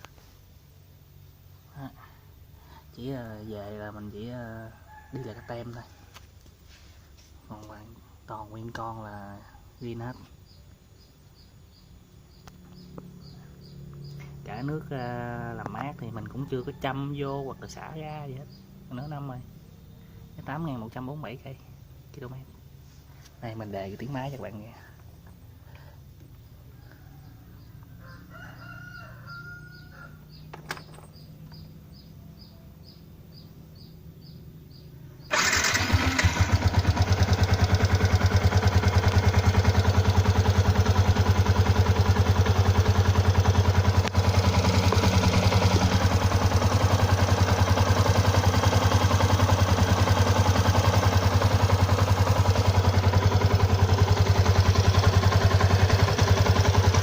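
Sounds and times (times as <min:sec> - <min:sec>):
motorcycle engine idling: 0:00.0 - 0:57.0
motorcycle electric starter: 0:35.3 - 0:57.0.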